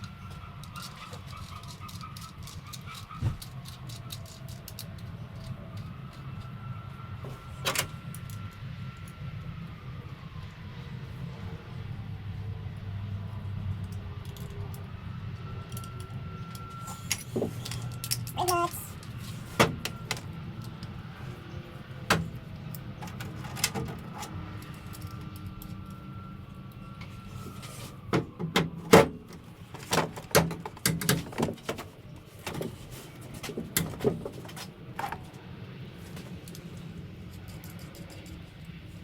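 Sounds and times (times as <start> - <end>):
tools and parts clanking: 0.0 - 6.5, 15.7 - 21.0, 22.0 - 26.0, 26.9 - 35.4, 36.0 - 38.7.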